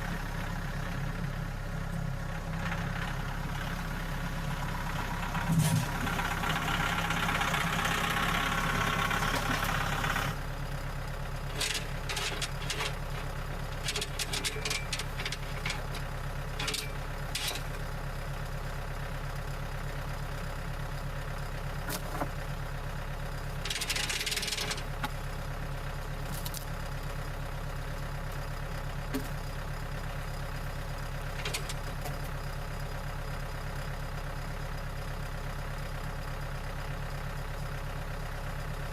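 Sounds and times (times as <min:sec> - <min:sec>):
engine idling: 0:00.0 - 0:38.9
clanks and knocks: 0:11.5 - 0:13.2.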